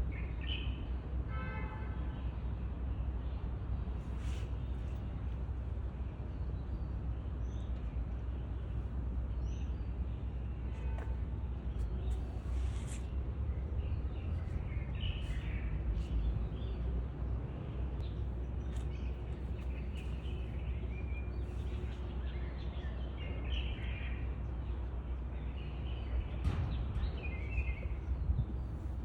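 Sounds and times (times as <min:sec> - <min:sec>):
steady low rumble: 0:24.6 - 0:29.0.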